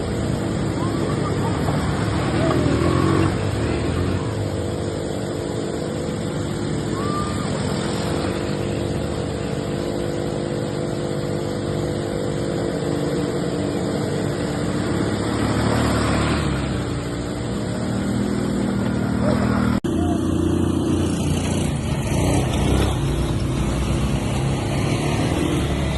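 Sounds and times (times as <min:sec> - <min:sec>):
quad bike engine running: 0:00.0 - 0:25.9.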